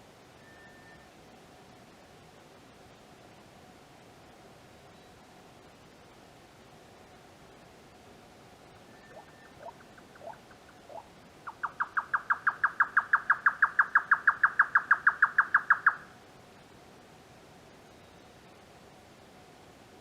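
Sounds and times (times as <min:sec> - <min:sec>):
faint short bird notes: 0:08.9 - 0:11.1.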